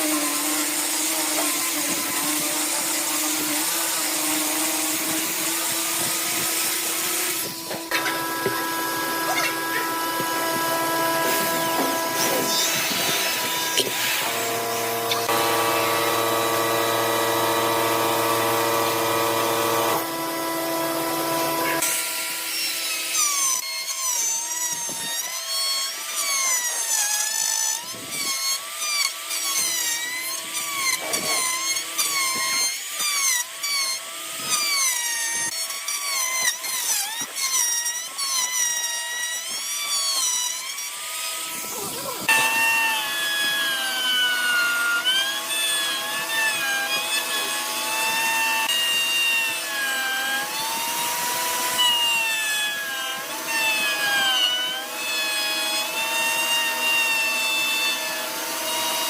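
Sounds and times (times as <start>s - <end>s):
wavering whine of tool rubbing: 0.0s - 59.0s
lathe motor hum: 3.2s - 22.0s.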